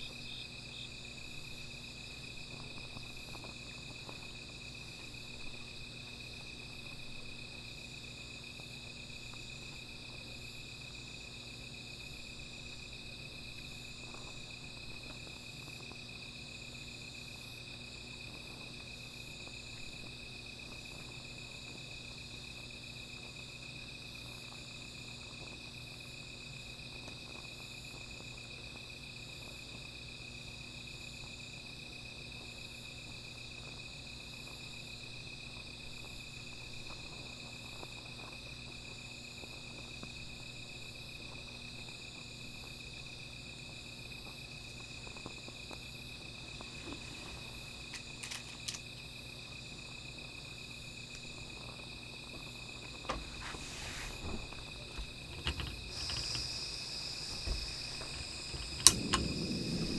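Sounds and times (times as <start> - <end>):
insects chirping in pulses: 0.0 - 3.2, 53.0 - 59.9
clicks and knocks: 47.9 - 48.8, 53.1 - 59.9
cricket high trill: 55.8 - 59.9.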